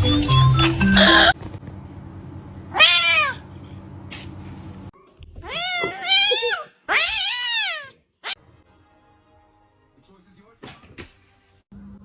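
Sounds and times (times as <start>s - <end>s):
cat meowing: 2.7s - 3.4s, 5.4s - 8.4s.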